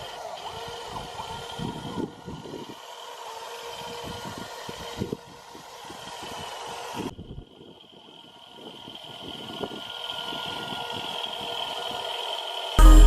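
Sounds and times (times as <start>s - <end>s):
small motor humming: 0.0s - 13.0s.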